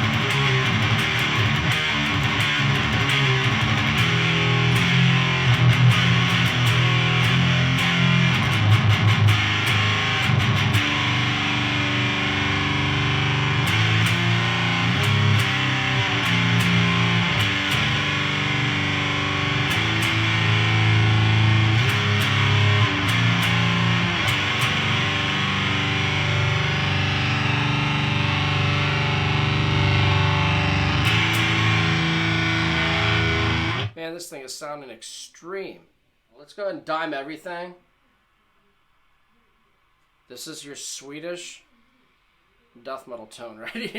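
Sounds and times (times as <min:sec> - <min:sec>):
distorted electric guitar riff: 0:00.0 - 0:34.0.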